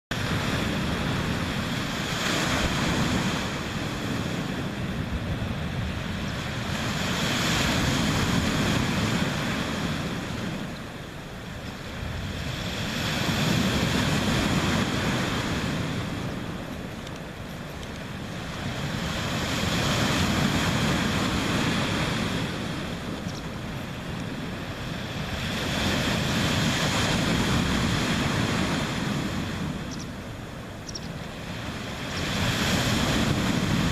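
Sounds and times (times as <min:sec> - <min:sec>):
sea waves breaking on shore: 0:00.1 - 0:33.9
wind on microphone: 0:00.1 - 0:33.9.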